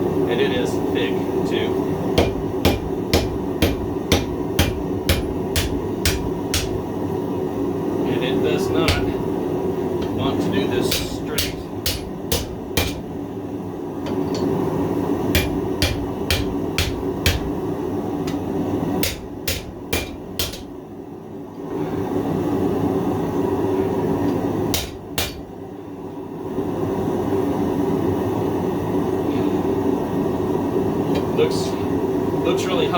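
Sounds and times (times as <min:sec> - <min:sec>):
steady hum: 0:00.0 - 0:32.9
hammer striking steel on anvil: 0:02.2 - 0:06.8, 0:08.9 - 0:09.2, 0:10.9 - 0:13.1, 0:15.3 - 0:17.6, 0:19.0 - 0:20.7, 0:24.7 - 0:25.5.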